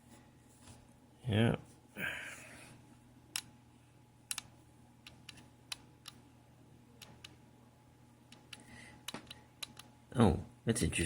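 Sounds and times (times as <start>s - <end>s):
small knob and switch clicks: 4.3s - 6.2s.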